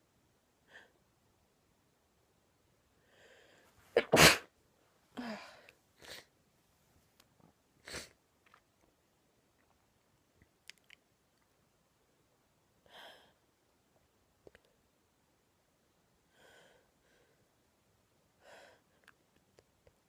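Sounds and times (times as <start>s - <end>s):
woman breathing quietly: 2.9s - 3.8s, 12.8s - 13.6s, 16.2s - 17.6s, 18.3s - 19.2s
faint small clicks: 10.4s - 11.5s.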